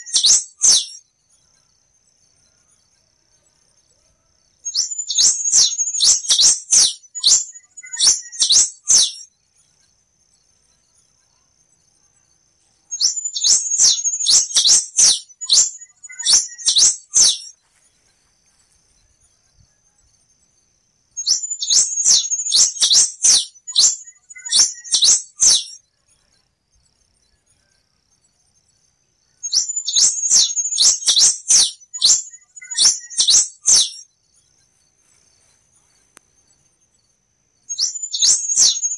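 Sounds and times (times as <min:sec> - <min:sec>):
finch singing high sharp notes: 0:00.0 - 0:01.0, 0:04.7 - 0:09.3, 0:13.0 - 0:17.5, 0:21.2 - 0:25.8, 0:29.4 - 0:34.0, 0:37.7 - 0:38.9.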